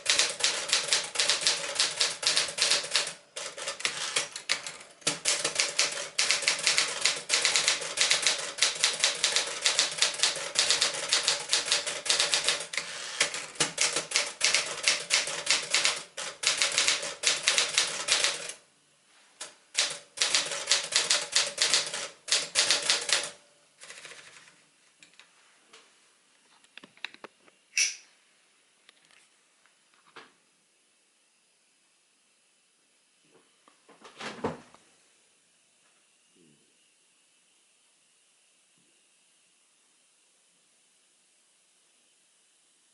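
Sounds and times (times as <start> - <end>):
manual typewriter typing: 0.0 - 18.6, 19.8 - 24.5.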